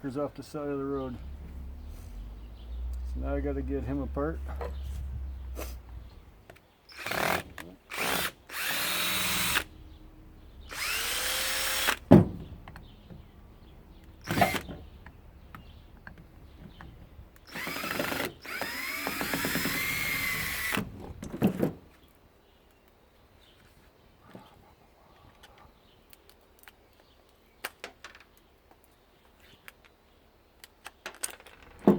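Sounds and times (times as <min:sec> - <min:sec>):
power drill whining: 0:06.9 - 0:13.2, 0:13.9 - 0:15.8, 0:17.4 - 0:21.1.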